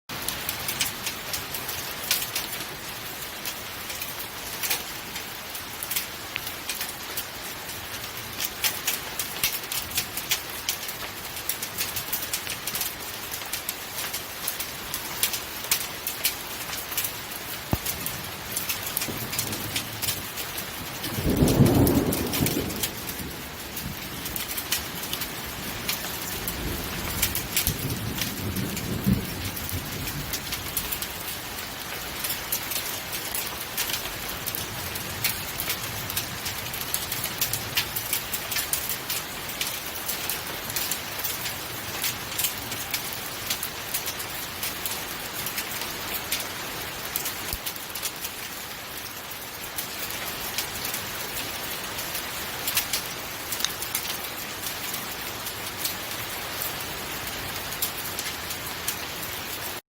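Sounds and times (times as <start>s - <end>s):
heavy rain and hail falling: 0.1s - 59.8s
thunder rumble: 17.7s - 31.1s.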